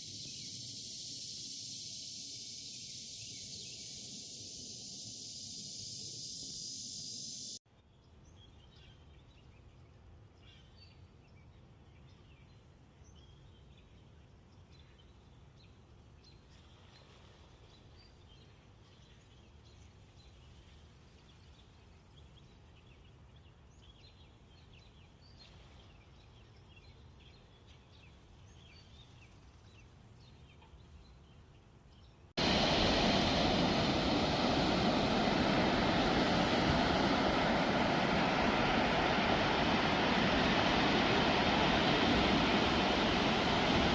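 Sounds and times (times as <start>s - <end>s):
loud hiss: 0.0s - 7.6s, 32.4s - 43.9s
loud steady rushing noise: 32.4s - 43.9s.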